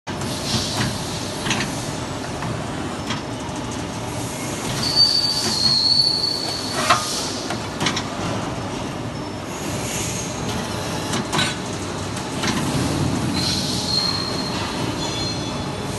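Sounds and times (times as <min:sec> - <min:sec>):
high metallic squeal: 0:04.8 - 0:07.2, 0:13.3 - 0:15.7.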